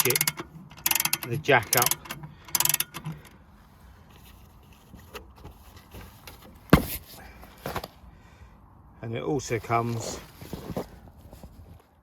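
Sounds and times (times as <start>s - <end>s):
jack ratchet clicking: 0.0s - 3.4s.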